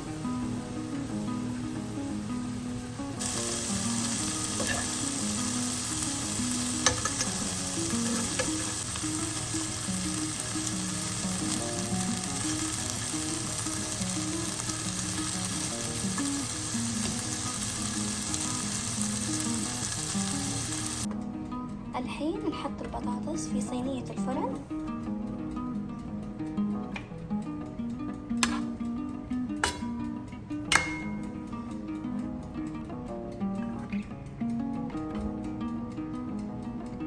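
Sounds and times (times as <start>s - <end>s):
chicken sizzling in a frying pan: 0.0s - 21.1s.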